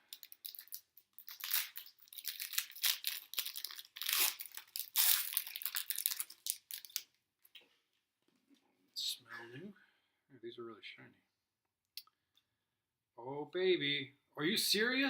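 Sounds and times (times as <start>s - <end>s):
wrapper tearing and crinkling: 0.0s - 7.1s.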